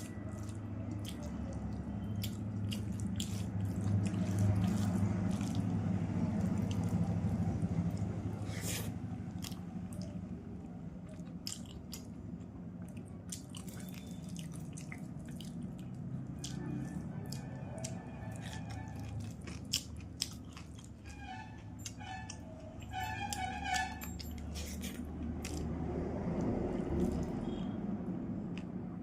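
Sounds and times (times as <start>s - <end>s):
person chewing food: 0.0s - 27.7s.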